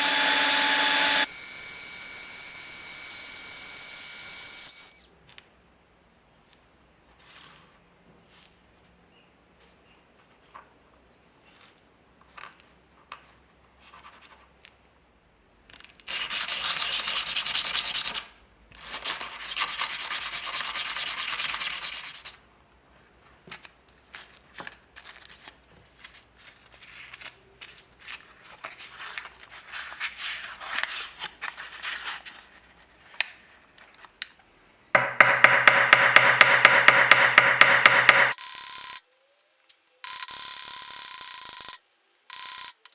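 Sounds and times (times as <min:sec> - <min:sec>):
sanding metal parts: 0:00.0 - 0:05.1
small motorized tool buzzing: 0:00.0 - 0:05.1, 0:40.1 - 0:42.8.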